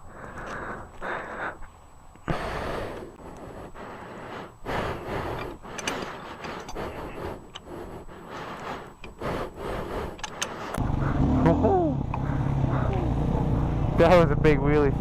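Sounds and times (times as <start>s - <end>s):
motorcycle engine: 10.5s - 15.0s.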